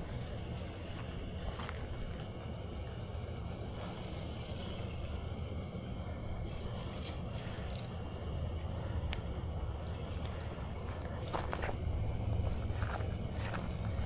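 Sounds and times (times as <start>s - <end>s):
faint ticks: 0.0s - 3.0s, 3.6s - 5.3s, 6.4s - 8.2s, 9.1s - 14.0s
crickets chirping: 0.0s - 14.0s.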